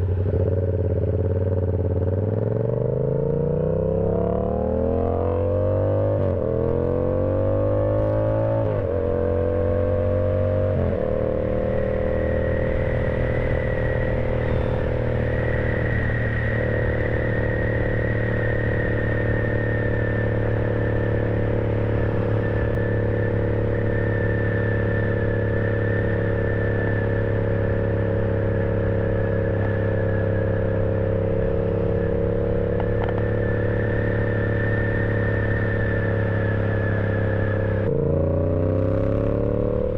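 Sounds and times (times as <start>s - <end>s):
motorcycle engine accelerating: 0.0s - 39.9s
faint high whine: 8.6s - 38.0s.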